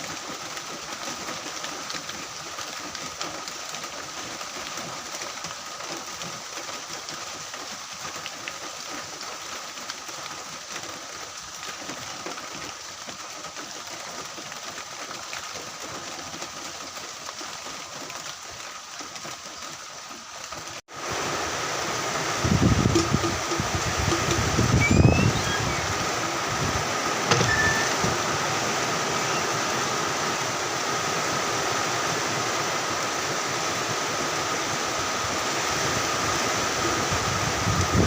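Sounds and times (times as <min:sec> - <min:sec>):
heavy rain falling: 0:00.0 - 0:38.0
loud steady noise: 0:22.3 - 0:29.0.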